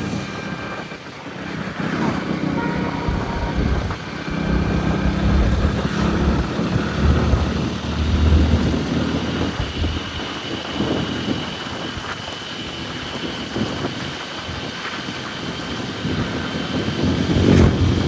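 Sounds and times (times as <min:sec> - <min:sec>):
road and wind noise: 0:00.0 - 0:18.0
motorcycle engine running: 0:02.6 - 0:10.4.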